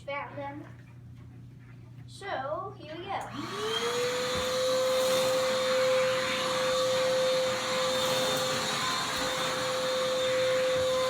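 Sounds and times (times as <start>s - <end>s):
handheld vacuum cleaner running: 3.2s - 11.0s.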